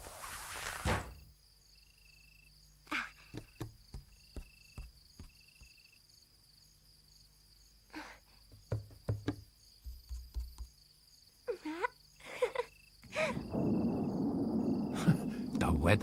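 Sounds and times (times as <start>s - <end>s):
crickets chirping: 1.2s - 16.0s
soft knocks: 8.6s - 10.7s.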